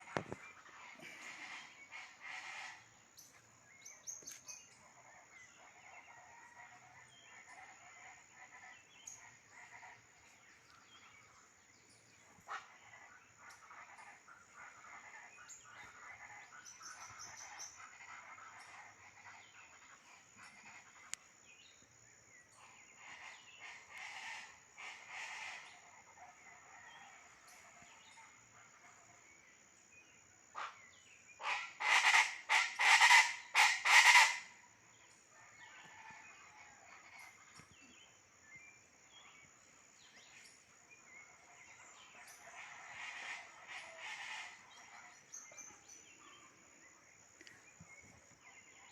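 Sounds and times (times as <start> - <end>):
distant birds calling: 0.0 - 4.8.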